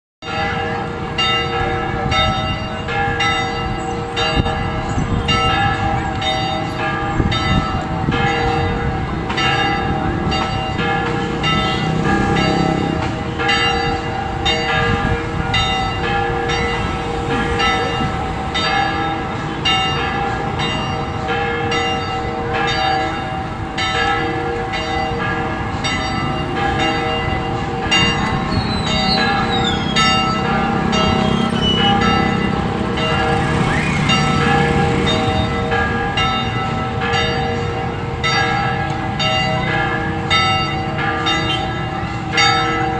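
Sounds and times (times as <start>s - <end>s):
church bells ringing: 0.2s - 42.9s.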